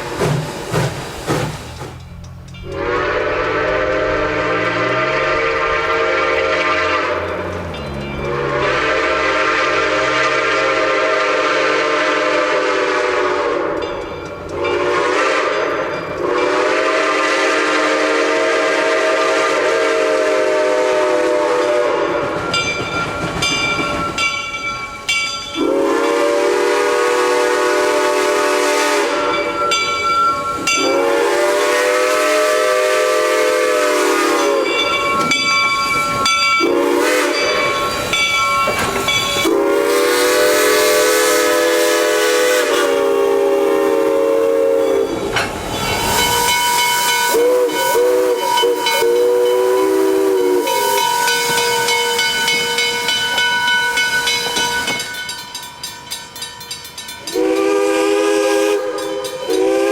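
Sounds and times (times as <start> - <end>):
steam hissing: 0.0 - 7.4, 8.3 - 55.8, 56.8 - 59.9
short high steam whistle toots: 2.6 - 7.3, 8.3 - 13.8, 14.6 - 22.4, 25.6 - 34.9, 36.6 - 38.2, 39.2 - 52.8, 57.4 - 59.9
steam whistle chord blasts: 2.6 - 7.6, 8.2 - 13.8, 14.5 - 22.6, 25.6 - 35.4, 36.2 - 38.5, 39.2 - 53.2, 57.2 - 59.9.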